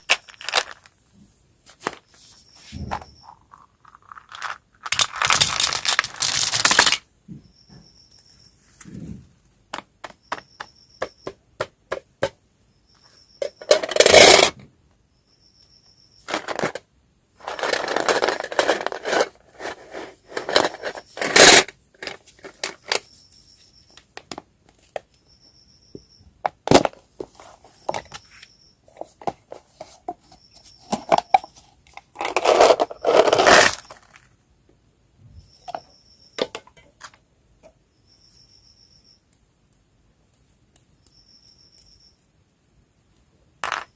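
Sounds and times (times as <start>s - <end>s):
plastic packaging crinkling: 0.0s - 0.9s, 3.9s - 7.0s
faint high chirp: 2.3s - 3.7s, 7.3s - 9.1s, 23.0s - 24.0s, 37.9s - 39.3s, 41.0s - 42.2s
candy pieces clicking together: 4.1s - 7.0s.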